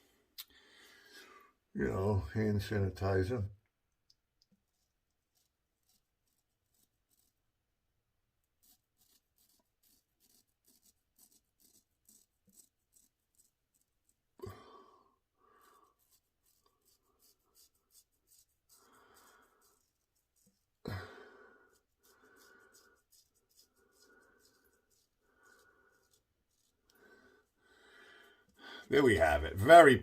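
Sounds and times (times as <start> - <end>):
straight razor scraping stubble: 4.5 - 7.4, 8.5 - 14.2, 21.7 - 27.5.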